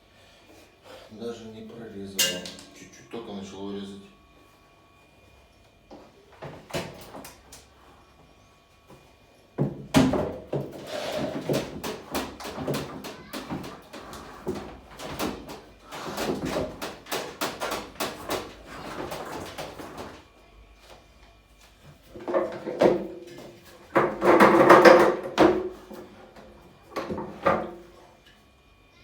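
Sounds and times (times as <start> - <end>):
washing machine parts knocking: 2.2 - 2.8, 9.6 - 20.2, 22.1 - 26.1
repeated knocking and rattling: 9.6 - 20.2, 22.1 - 26.1.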